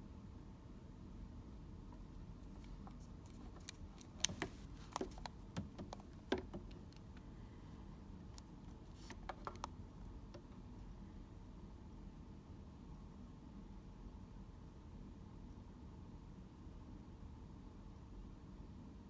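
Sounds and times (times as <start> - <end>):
plastic clicks of headset buttons: 2.4 - 7.3, 8.4 - 10.5.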